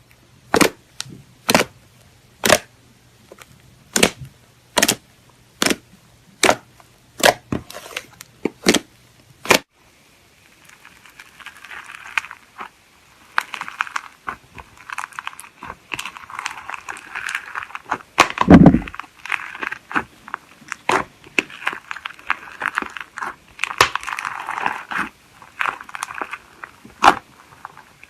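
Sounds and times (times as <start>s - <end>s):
deep slime squelch: 0.0s - 28.0s
crunchy slime crackling: 0.4s - 1.8s, 2.4s - 9.7s, 10.3s - 28.0s
slime popping: 2.4s - 2.7s, 3.3s - 5.8s, 10.6s - 28.0s.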